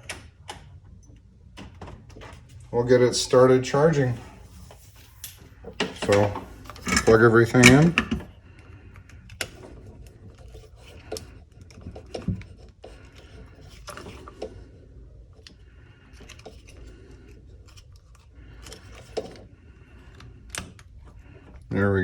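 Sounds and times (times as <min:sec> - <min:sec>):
charger cable and plugs handled: 0:05.2 - 0:14.7, 0:15.3 - 0:21.7.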